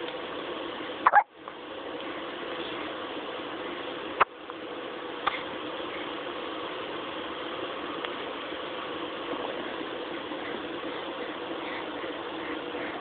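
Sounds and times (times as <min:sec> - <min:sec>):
steady background hum: 0:00.0 - 0:13.0.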